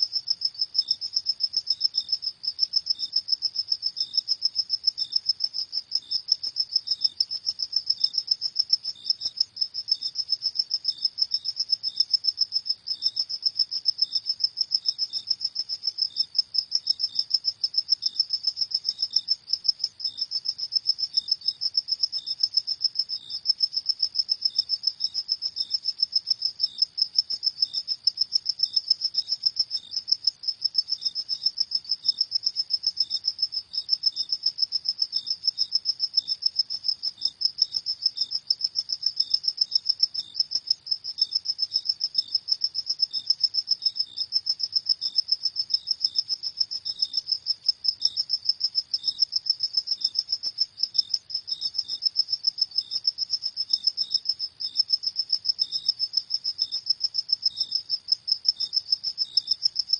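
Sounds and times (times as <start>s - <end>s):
crickets chirping: 0.0s - 59.9s.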